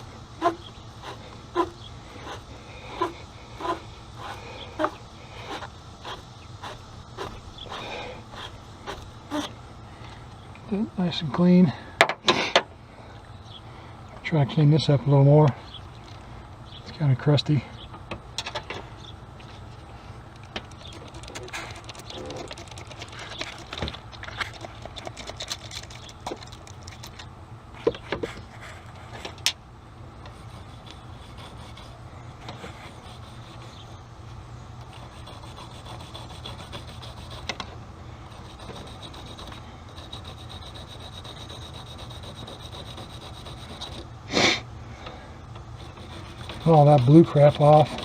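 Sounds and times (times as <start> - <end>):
steady low hum: 0.0 - 48.0
wire brush scraping metal: 38.3 - 44.1, 45.7 - 48.0.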